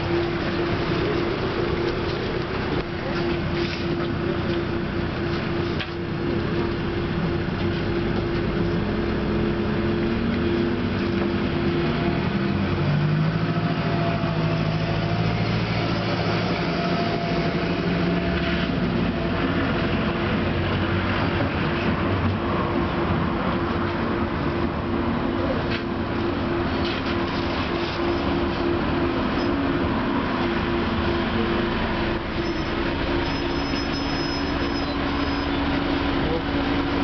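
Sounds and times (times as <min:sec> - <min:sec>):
constant hum: 0:00.0 - 0:37.0
tram wheels rumbling: 0:00.0 - 0:37.0.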